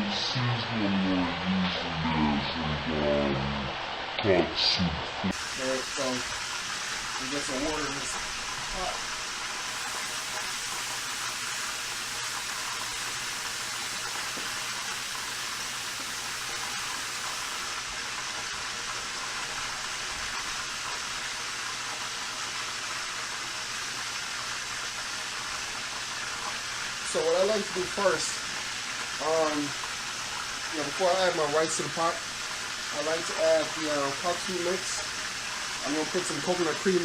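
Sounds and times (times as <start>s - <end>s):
tap water running into pot: 5.3s - 37.0s.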